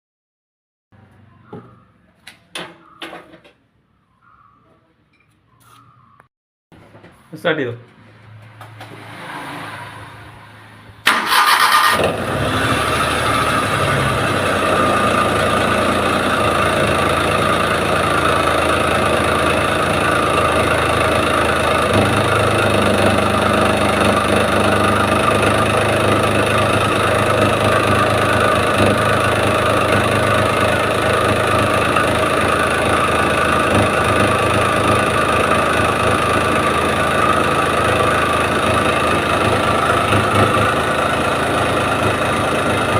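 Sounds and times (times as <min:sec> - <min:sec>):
engine idling: 0:11.0 - 0:42.9.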